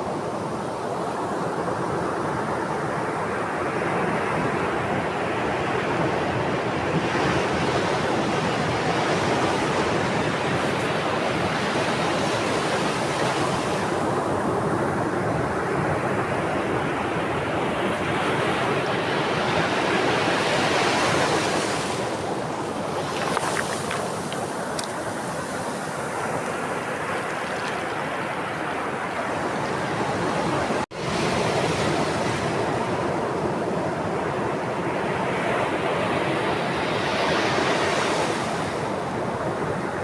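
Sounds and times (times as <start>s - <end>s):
ocean waves washing on shore: 0.0s - 40.0s.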